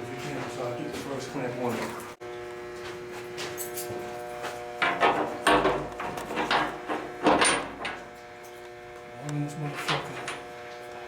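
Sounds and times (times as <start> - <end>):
metal clamp clanking on door: 5.0 - 8.0.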